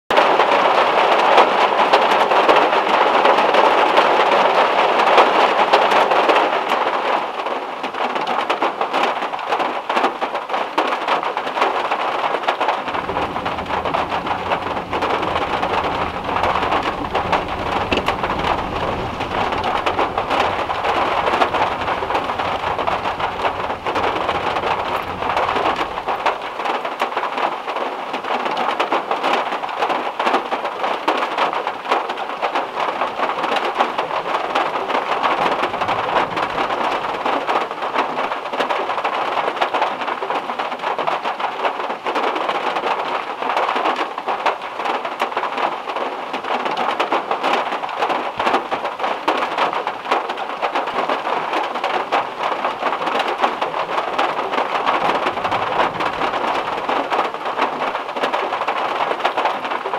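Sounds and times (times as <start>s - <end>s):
heavy rain on a metal roof: 0.1s - 59.9s
thunder rumbling: 12.8s - 27.0s, 33.1s - 37.9s, 52.2s - 58.0s.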